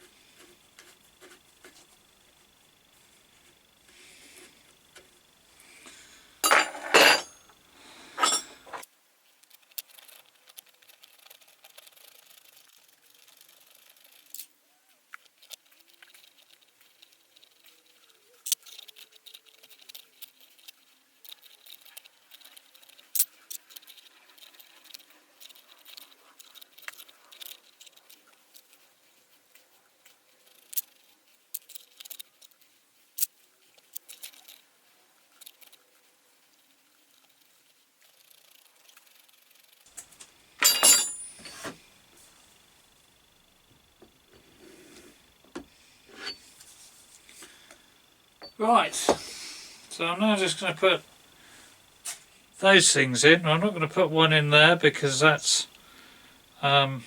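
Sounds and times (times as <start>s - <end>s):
metal parts knocking: 6.4s - 7.5s, 8.1s - 8.8s, 40.0s - 41.8s
metal parts clinking: 6.4s - 8.8s, 40.0s - 41.8s.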